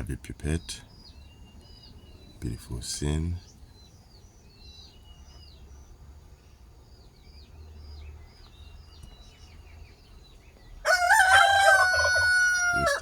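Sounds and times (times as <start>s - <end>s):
small birds chirping: 0.0s - 13.0s
rooster crowing: 10.8s - 13.0s.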